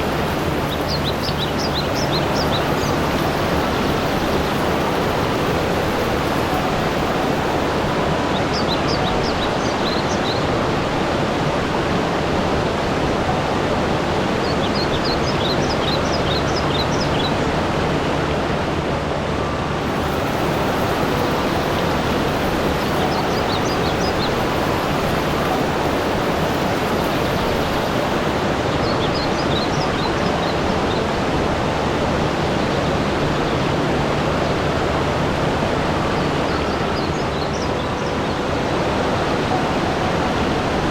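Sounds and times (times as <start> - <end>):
rushing water: 0.0 - 40.9.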